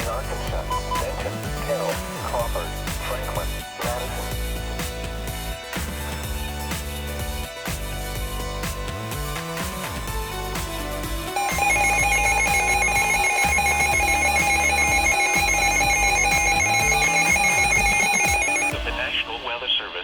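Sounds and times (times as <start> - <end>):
background music: 0.0 - 20.0
trilling electronic alarm: 11.4 - 19.0.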